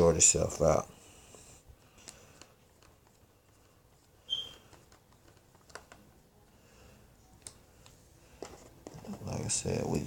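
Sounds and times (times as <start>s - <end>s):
high squeak: 4.3s - 4.6s.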